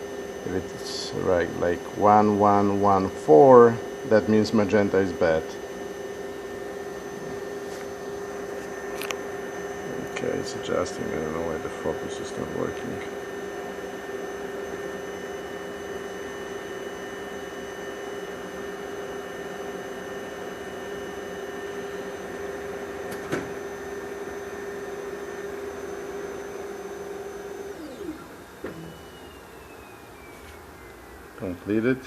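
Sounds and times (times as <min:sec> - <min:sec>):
faint high whine: 0:00.0 - 0:05.6, 0:07.0 - 0:13.2, 0:25.9 - 0:32.0
copier mechanical whirr: 0:00.0 - 0:32.0
motors winding down: 0:26.6 - 0:32.0.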